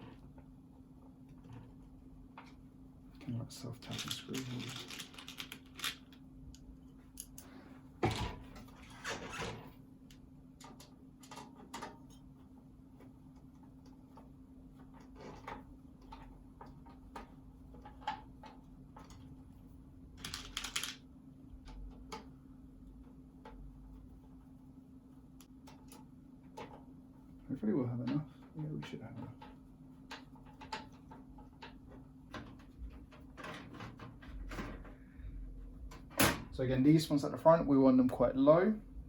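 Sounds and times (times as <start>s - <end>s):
screws and fan clicking and tapping: 3.7s - 24.4s, 25.3s - 27.0s, 27.7s - 35.0s.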